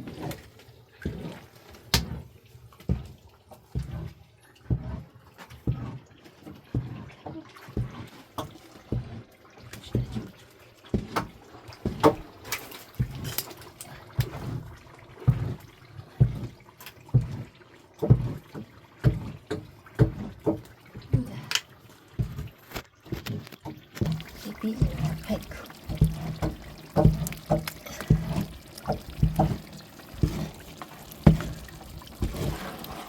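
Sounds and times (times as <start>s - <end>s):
water sloshing: 0.0s - 33.0s
knocks: 24.0s - 30.6s.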